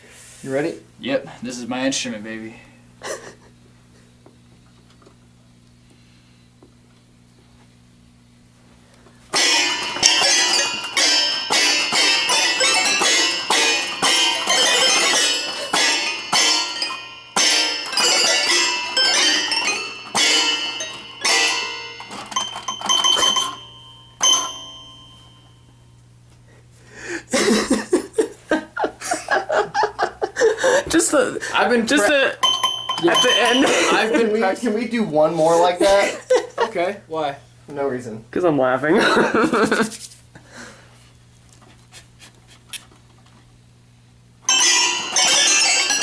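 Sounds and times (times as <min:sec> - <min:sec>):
low electrical hum: 0:00.0 - 0:46.0
people laughing: 0:03.0 - 0:03.6, 0:27.2 - 0:32.4, 0:33.2 - 0:34.6, 0:35.4 - 0:37.0, 0:39.0 - 0:40.0
bell-like ringing notes: 0:09.4 - 0:26.0, 0:31.9 - 0:35.0, 0:44.5 - 0:46.0.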